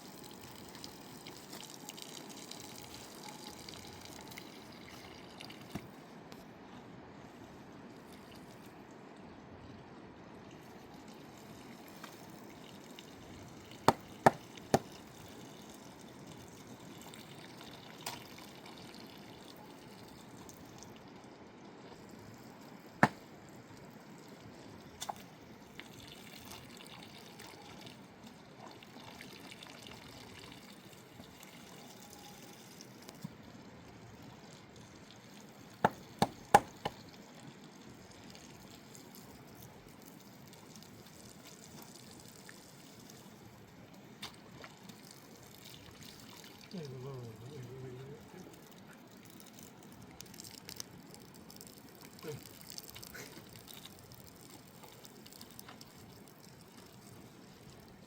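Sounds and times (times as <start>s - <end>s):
flowing river water: 0.0s - 58.0s
sharp knocks: 35.8s - 37.0s.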